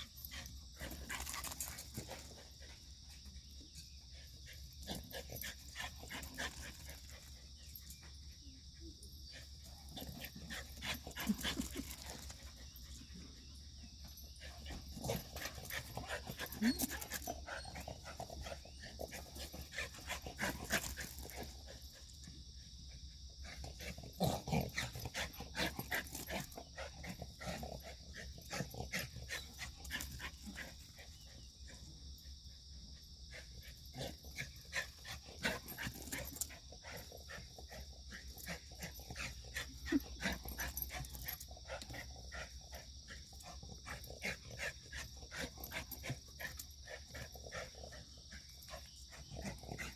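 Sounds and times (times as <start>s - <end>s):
dog paws clicking and scuffling: 0.0s - 2.5s.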